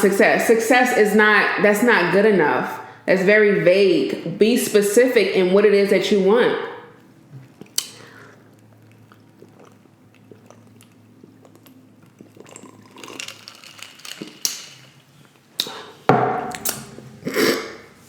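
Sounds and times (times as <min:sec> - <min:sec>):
chewing and crunching chips: 0:07.0 - 0:15.9
mouth clicks: 0:15.6 - 0:15.9.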